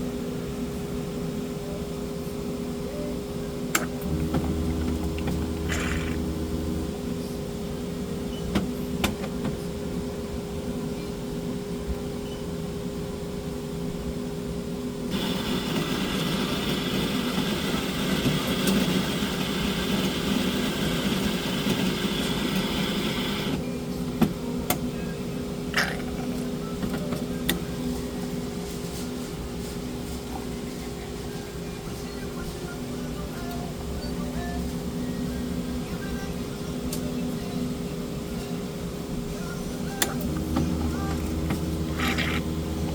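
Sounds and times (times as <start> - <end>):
coffee machine whirring: 3.8 - 9.6, 15.1 - 24.8, 25.5 - 29.3, 39.2 - 42.9.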